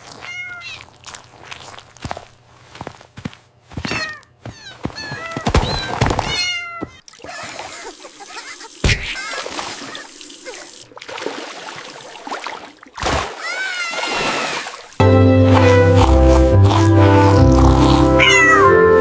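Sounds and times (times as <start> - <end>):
kittens meowing: 3.8 - 8.5, 18.1 - 19.0.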